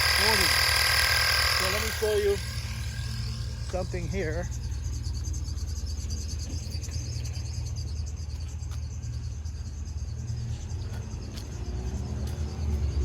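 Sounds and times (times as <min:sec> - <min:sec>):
air compressor running: 0:00.0 - 0:07.2.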